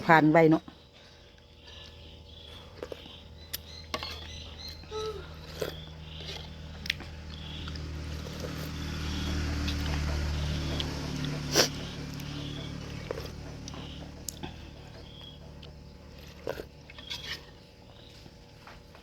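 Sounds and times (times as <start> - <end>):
low steady hum: 0.0 - 19.0
slurping: 2.6 - 8.8, 9.6 - 14.6, 16.1 - 17.7.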